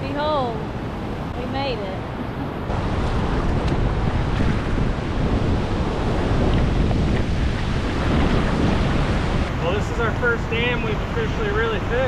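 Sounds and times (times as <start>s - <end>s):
wind buffeting microphone: 0.0s - 12.0s
river water rushing over dam: 7.2s - 12.0s.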